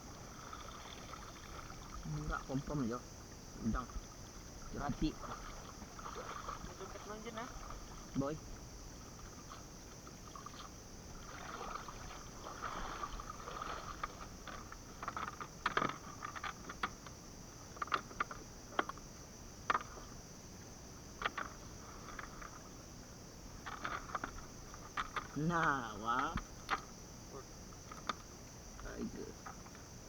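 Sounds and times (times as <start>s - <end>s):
insect drone: 0.0s - 30.0s
water sloshing and splashing: 0.0s - 30.0s
short sharp splashes: 4.7s - 8.4s, 10.2s - 14.6s.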